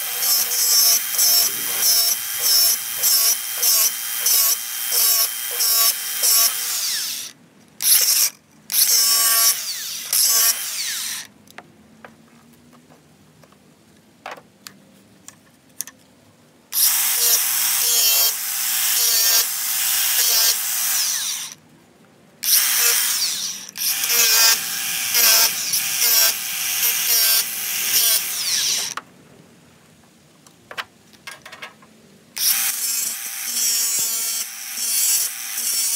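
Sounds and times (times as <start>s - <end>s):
handheld power tool running: 0.0s - 11.2s, 16.8s - 21.6s, 22.4s - 29.0s, 32.4s - 35.9s.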